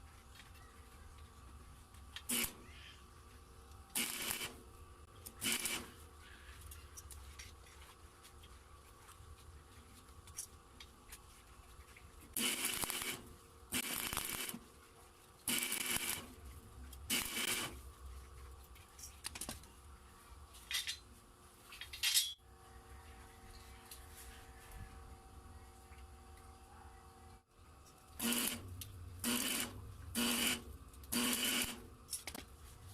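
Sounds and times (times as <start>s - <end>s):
faint low hum: 17.8s - 31.2s.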